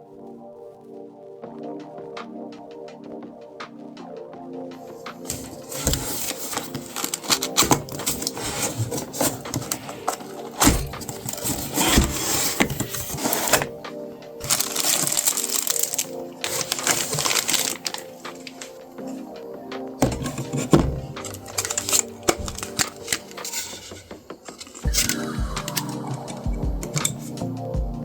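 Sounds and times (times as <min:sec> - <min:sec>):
background music: 0:00.0 - 0:28.0
packaging rustling: 0:05.2 - 0:13.8, 0:14.4 - 0:19.4, 0:20.0 - 0:27.4
computer parts clicking and clattering: 0:05.3 - 0:13.8, 0:14.4 - 0:18.8, 0:20.0 - 0:27.4.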